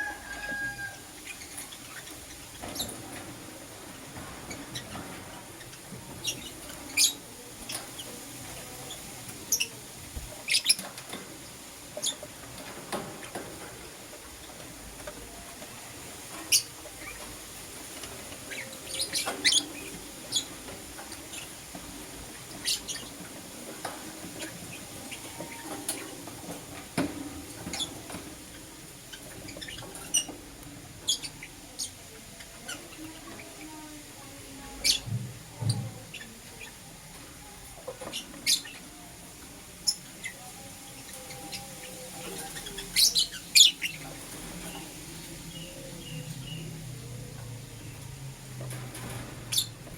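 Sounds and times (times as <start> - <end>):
lovebirds chirping: 4.2 - 11.2, 15.2 - 17.5, 18.2 - 21.7, 22.4 - 23.4, 27.4 - 30.4, 34.6 - 39.1, 39.7 - 48.2.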